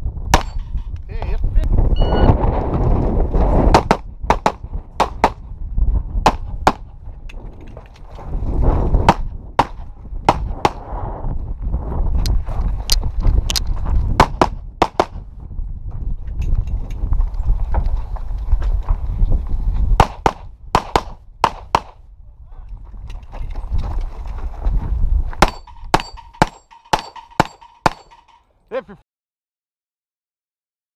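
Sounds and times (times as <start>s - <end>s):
handgun shots: 25.4s - 28.4s.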